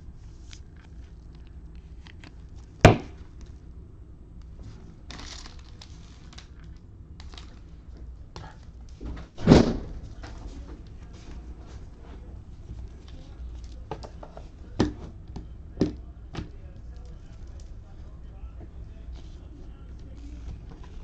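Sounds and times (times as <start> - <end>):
sharp thuds: 9.4 - 10.0.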